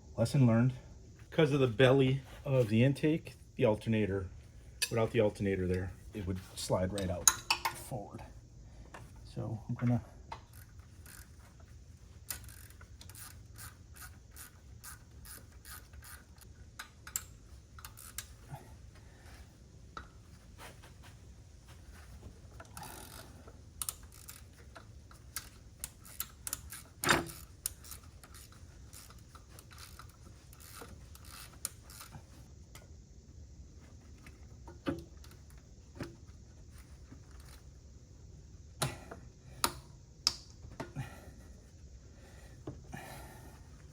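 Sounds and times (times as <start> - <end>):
ratchet wrench clicking: 6.9 - 7.8, 10.3 - 11.6, 12.2 - 18.4, 22.6 - 32.4.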